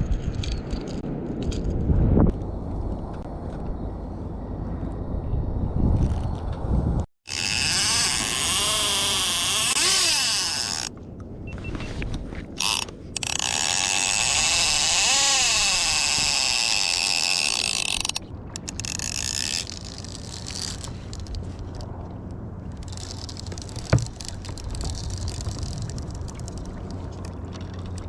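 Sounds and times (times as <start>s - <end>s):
fishing reel ratcheting: 7.3s - 10.9s, 12.6s - 21.9s, 22.8s - 26.7s.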